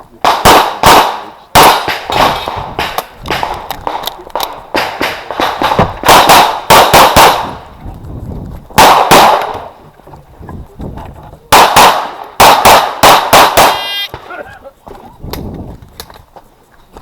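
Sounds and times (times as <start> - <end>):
pistol firing rapidly: 0.2 - 7.6, 8.8 - 9.7, 11.5 - 13.9.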